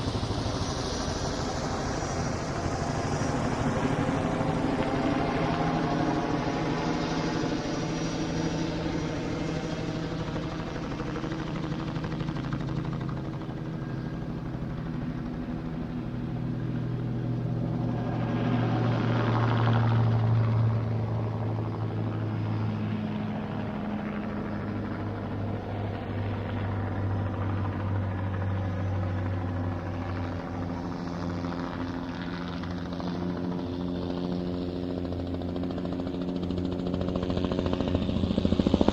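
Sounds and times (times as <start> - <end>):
helicopter rotor drone: 0.0 - 38.9.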